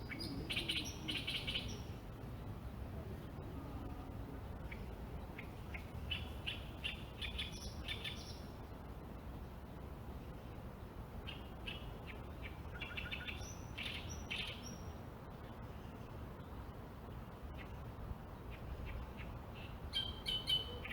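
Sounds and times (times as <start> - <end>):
small birds chirping: 0.0 - 1.9, 4.7 - 8.5.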